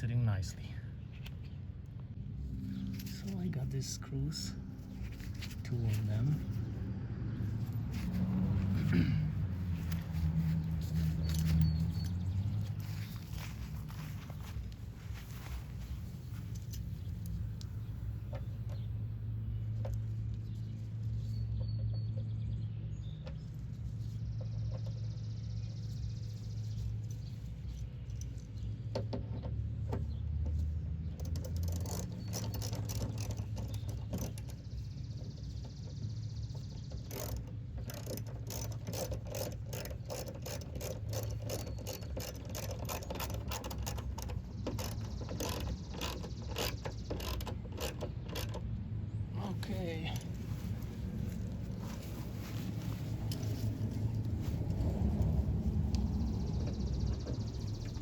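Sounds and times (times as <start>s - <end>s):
hand ratchet clicking: 31.1s - 34.7s, 36.9s - 48.7s
steady low hum: 31.2s - 58.0s.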